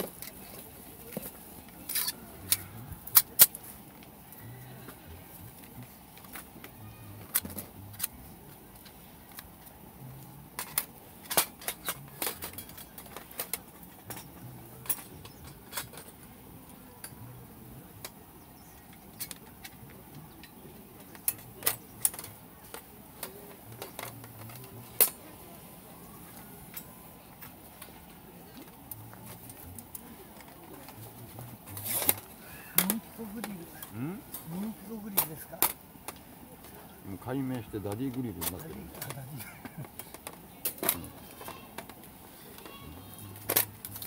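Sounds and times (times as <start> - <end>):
camp gear clicking and clinking: 0.0 - 44.0.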